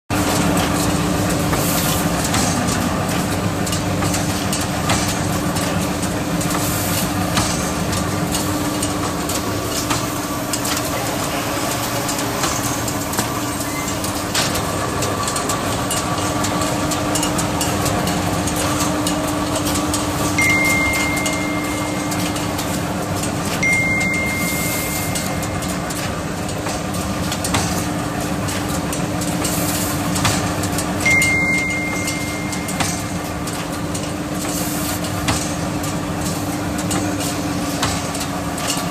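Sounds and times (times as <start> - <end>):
high electronic beep: 20.4 - 22.7, 23.6 - 26.1, 31.1 - 33.0.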